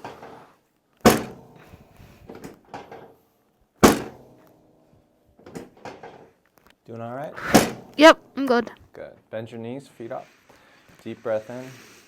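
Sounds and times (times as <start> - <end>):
table section dropping with thunk: 7.4 - 7.8.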